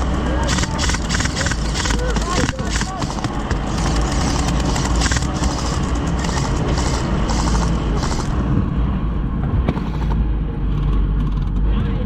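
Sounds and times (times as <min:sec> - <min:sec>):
truck engine rumble: 0:00.0 - 0:12.0
short hissing bursts: 0:02.7 - 0:08.4.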